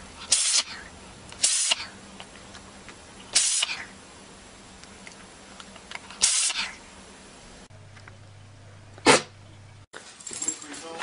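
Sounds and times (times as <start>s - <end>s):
animal sneezes: 0.2s - 0.8s, 1.4s - 2.0s, 3.3s - 3.9s, 6.2s - 6.8s, 9.0s - 9.4s.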